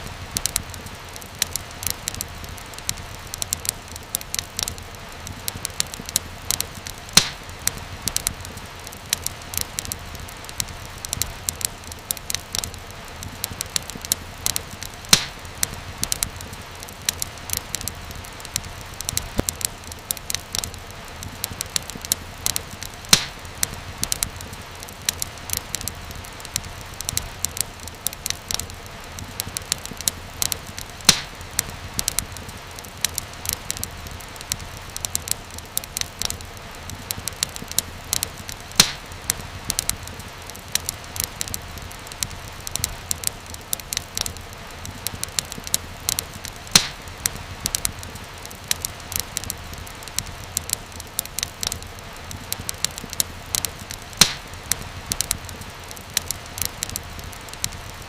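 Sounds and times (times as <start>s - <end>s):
wood fire crackling: 0.0s - 58.0s
loud pop from fire: 7.2s - 7.4s, 15.1s - 15.4s, 23.1s - 23.4s, 30.8s - 31.4s, 38.8s - 39.1s, 46.7s - 47.1s, 54.2s - 54.5s.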